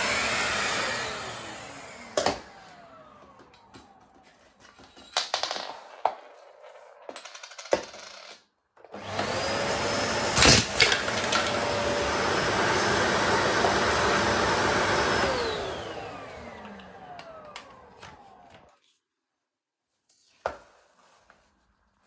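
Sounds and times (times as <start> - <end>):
vacuum cleaner whine: 0.0 - 5.2, 8.9 - 18.8.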